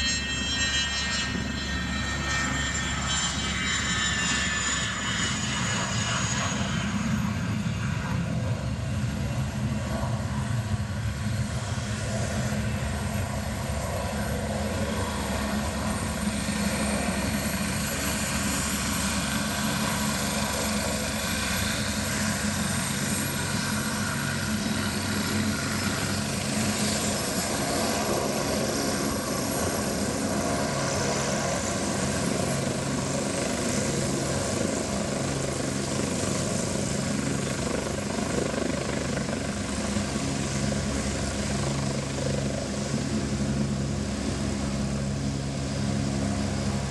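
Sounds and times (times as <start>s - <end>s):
high whine: 0.0s - 8.3s
helicopter rotor and engine drone: 0.0s - 46.9s.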